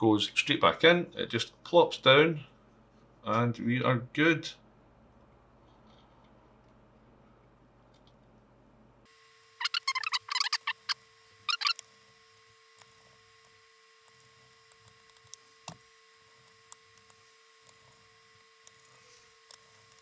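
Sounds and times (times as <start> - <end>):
faint steady hum: 0.0 - 20.0
small laptop parts clicking: 9.4 - 11.9, 12.8 - 20.0.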